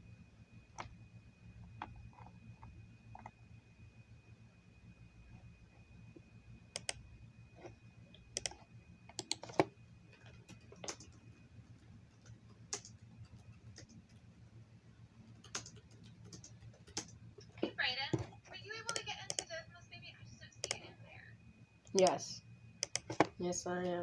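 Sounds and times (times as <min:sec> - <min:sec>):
low steady hum: 0:00.0 - 0:24.0
computer keys clicking: 0:06.7 - 0:07.0, 0:07.6 - 0:14.3, 0:15.3 - 0:17.6, 0:18.2 - 0:19.5, 0:20.6 - 0:20.9, 0:21.8 - 0:22.2, 0:22.8 - 0:23.4.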